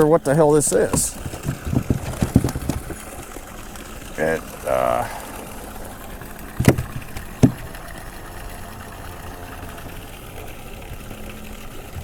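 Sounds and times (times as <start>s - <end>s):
sharp knocks: 6.6s - 7.7s.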